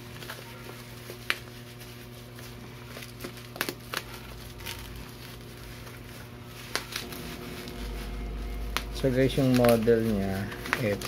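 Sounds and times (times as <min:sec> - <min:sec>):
steady low hum: 0:04.0 - 0:11.0.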